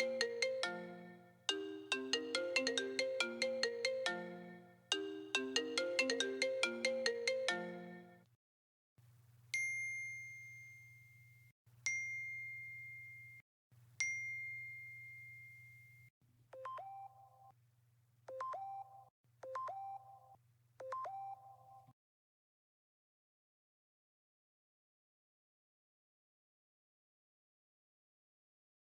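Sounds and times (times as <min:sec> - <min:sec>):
chime notes: 0:00.0 - 0:08.2
marimba-style ringtone: 0:00.0 - 0:08.2.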